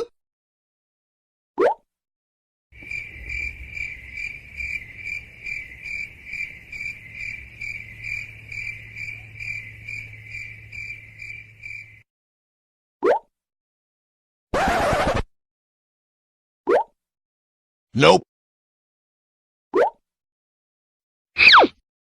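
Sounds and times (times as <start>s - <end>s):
crickets chirping: 2.8s - 12.0s.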